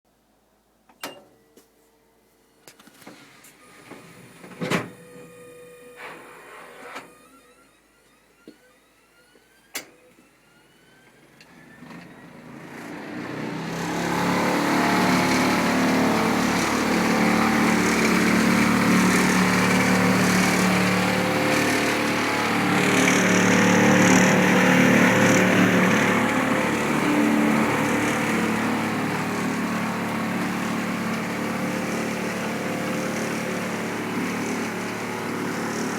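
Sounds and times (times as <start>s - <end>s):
dryer drum grinding: 13.7s - 35.9s.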